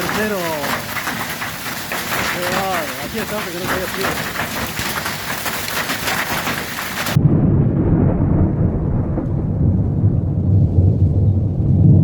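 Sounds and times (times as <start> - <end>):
hail and rain hissing: 0.0 - 7.2
thunder rumbling: 0.0 - 12.0
wind: 0.0 - 12.0.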